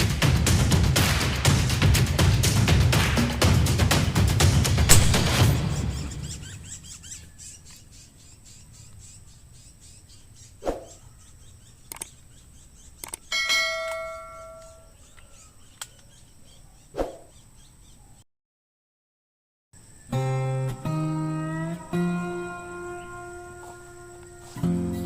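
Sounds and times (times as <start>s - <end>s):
faint bird chirps: 5.5s - 18.2s, 19.8s - 25.0s
bell-like metallic ring: 13.3s - 15.0s.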